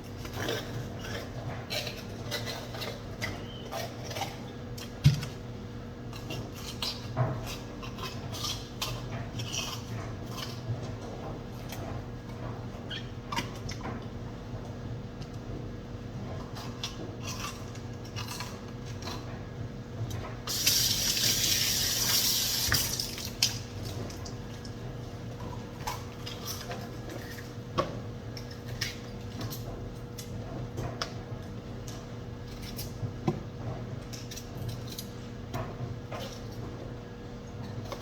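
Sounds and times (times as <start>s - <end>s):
kitchen tap running: 20.5s - 24.4s.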